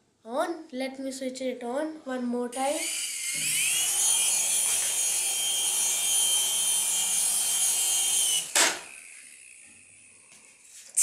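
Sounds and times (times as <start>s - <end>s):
toy helicopter motor whine: 2.6s - 11.0s
sharp knock: 8.5s - 8.9s.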